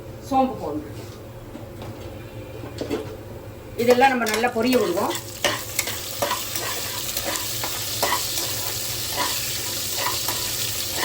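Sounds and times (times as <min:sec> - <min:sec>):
seeds sizzling in hot oil: 0:04.9 - 0:11.0.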